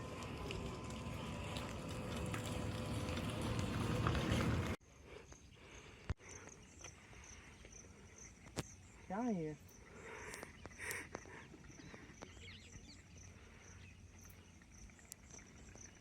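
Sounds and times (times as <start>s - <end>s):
rumbling outdoor noise: 0.0s - 4.8s
insects chirping: 0.0s - 16.0s.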